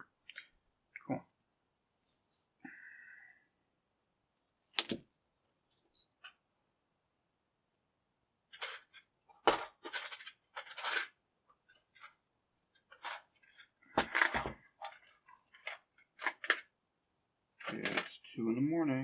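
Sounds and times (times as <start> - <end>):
small metal parts clinking: 9.8 - 11.1.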